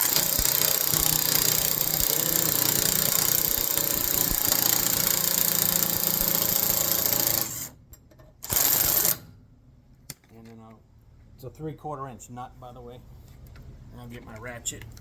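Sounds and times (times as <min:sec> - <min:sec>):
power wrench running: 0:00.0 - 0:07.8, 0:08.4 - 0:09.2.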